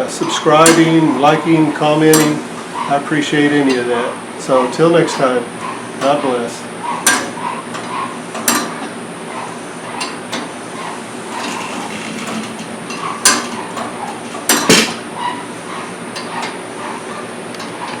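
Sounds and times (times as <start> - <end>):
sharp metallic clicks and knocks: 2.0 - 2.5, 7.0 - 18.0.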